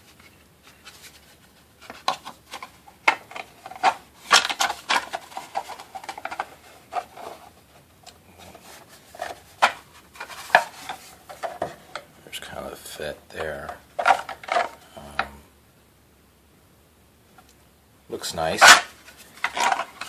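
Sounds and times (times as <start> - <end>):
plastic parts clicking and tapping: 1.8 - 8.2, 13.4 - 15.3, 18.6 - 20.0.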